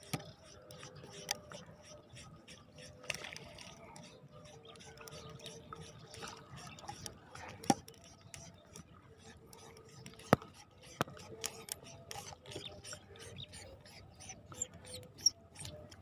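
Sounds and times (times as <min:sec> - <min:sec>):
underwater crackle of clicks: 0:03.0 - 0:04.0.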